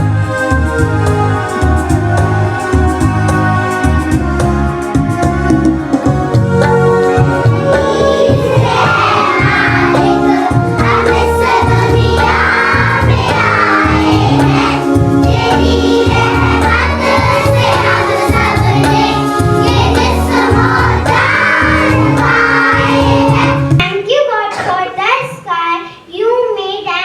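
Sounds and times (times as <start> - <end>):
musical accompaniment with low beat: 0.0 - 23.8
children singing together: 6.9 - 23.8.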